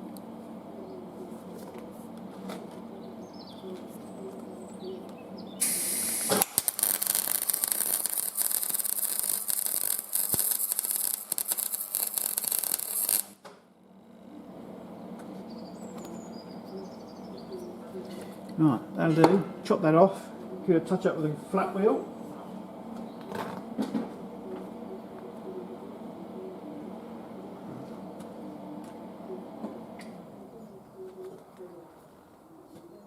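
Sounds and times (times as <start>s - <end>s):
steady low hum: 0.0s - 33.0s
welding arc crackling and hissing: 5.6s - 13.4s.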